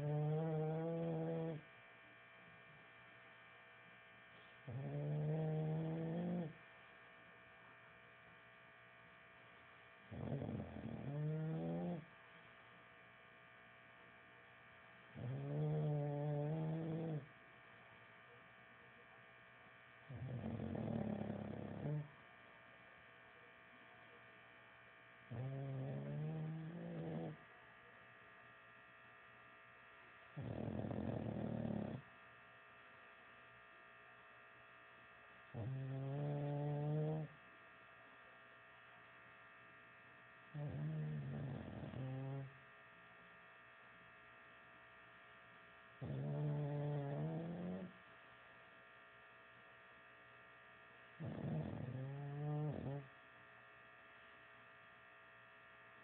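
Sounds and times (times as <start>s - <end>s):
person snoring: 0.0s - 1.6s, 4.6s - 6.6s, 10.1s - 12.1s, 15.2s - 17.3s, 20.1s - 22.1s, 25.3s - 27.4s, 30.4s - 32.0s, 35.6s - 37.3s, 40.6s - 42.5s, 46.0s - 47.9s, 51.2s - 53.1s
steady electrical hum: 0.0s - 56.0s.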